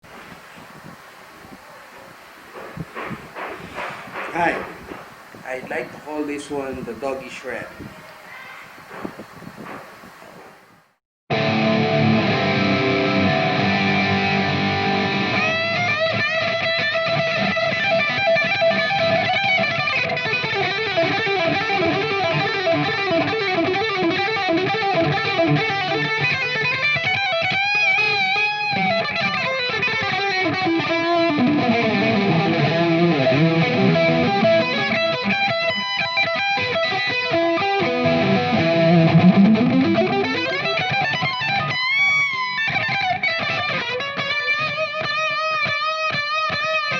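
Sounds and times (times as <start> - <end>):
electric guitar shred lead: 11.3 - 46.9.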